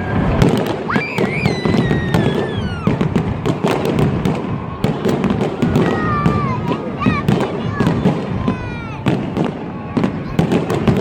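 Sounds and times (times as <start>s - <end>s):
firework whistle falling in pitch: 0.0s - 6.4s
fireworks cracks and bangs: 0.0s - 11.0s.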